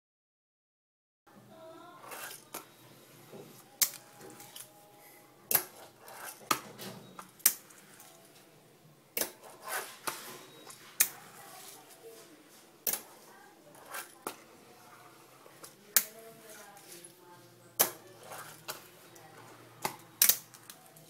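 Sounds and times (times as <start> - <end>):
small wheels rolling and scraping: 2.0 - 4.7, 5.6 - 8.4, 9.4 - 17.2, 17.8 - 21.0.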